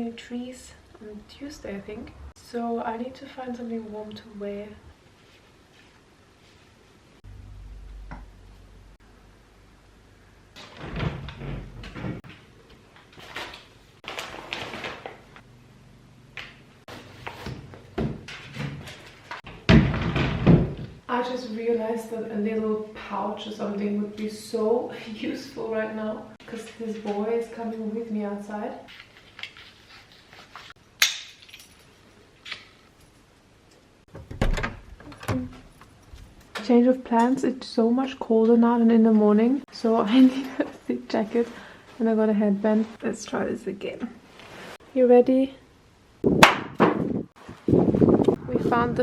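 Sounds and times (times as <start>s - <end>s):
cupboard doors and drawers knocking: 19.5s - 21.0s.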